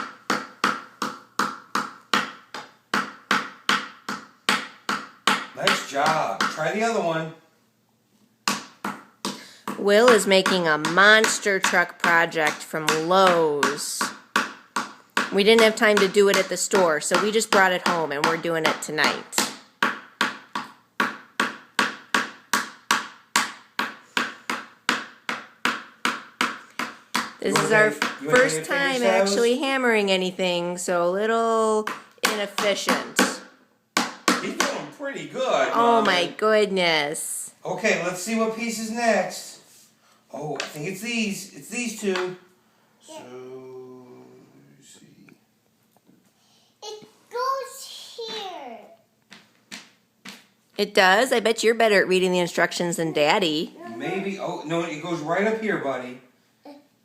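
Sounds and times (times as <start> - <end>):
hammer striking a nail into wood: 0.0 - 6.6, 19.4 - 28.6, 31.9 - 34.8
hammer tapping a nail into wood: 0.0 - 6.6.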